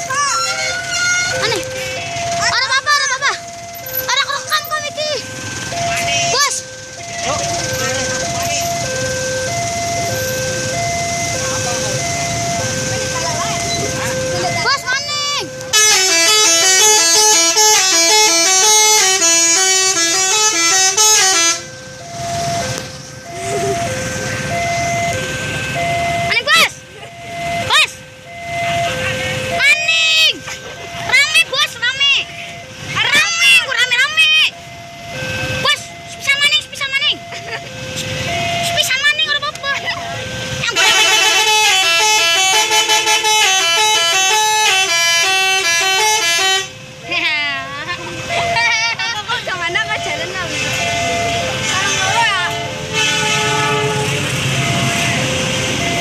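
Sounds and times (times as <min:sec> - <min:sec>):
vehicle low rumble: 0:00.0 - 0:42.7, 0:43.6 - 0:56.0
multi-tone truck horn melody: 0:15.7 - 0:21.9, 0:39.9 - 0:46.8, 0:51.4 - 0:56.0.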